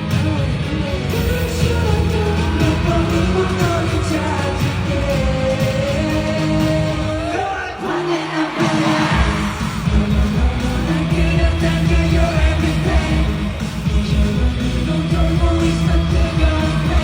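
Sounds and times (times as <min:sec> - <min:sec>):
band playing: 0:00.0 - 0:07.4
man singing pop-rock song: 0:00.0 - 0:17.0.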